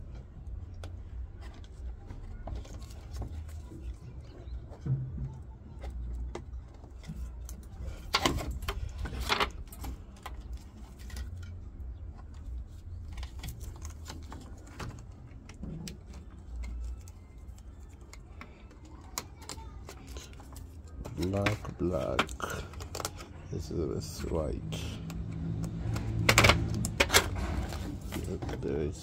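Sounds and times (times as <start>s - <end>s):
connectors clattering: 4.6s - 29.0s
plastic connectors clicking and rattling: 5.8s - 24.2s, 25.0s - 29.0s.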